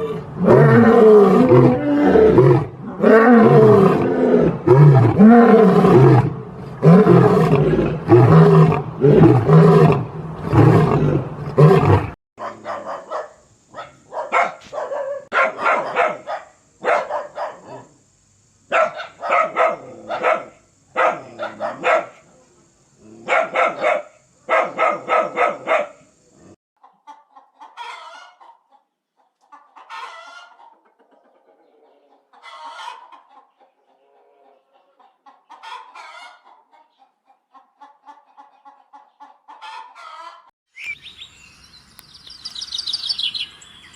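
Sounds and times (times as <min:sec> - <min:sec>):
lion roaring: 0:00.0 - 0:12.2
chickens clucking and crowing: 0:26.8 - 0:40.5.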